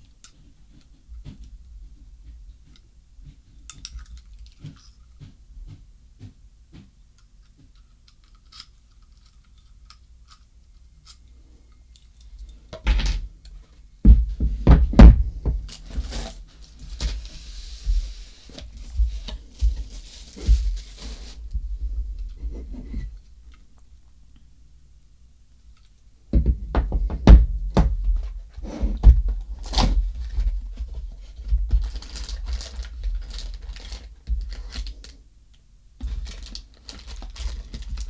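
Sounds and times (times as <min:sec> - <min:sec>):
rustling hiss: 0:15.9 - 0:21.5.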